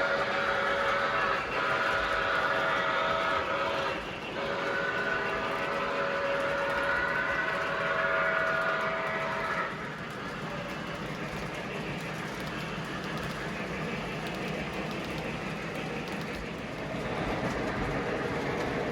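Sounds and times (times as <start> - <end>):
model train horn: 0.0 - 9.8.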